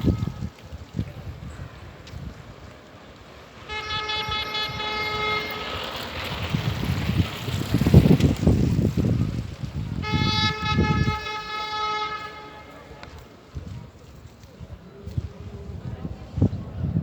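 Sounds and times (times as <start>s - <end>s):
horn blasts: 3.6s - 7.2s, 9.9s - 13.2s.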